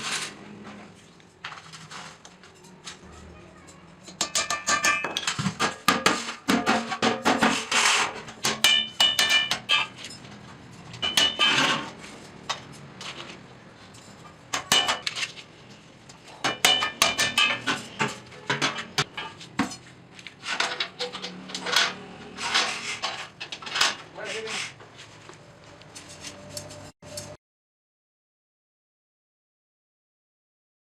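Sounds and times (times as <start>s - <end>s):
hammer on sheet steel: 4.0s - 10.0s, 11.0s - 11.9s, 16.4s - 19.4s.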